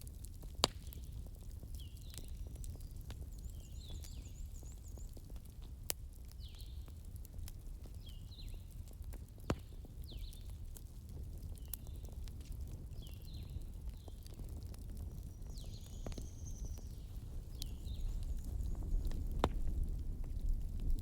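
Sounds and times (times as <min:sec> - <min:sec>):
wood fire crackling: 0:00.0 - 0:21.0.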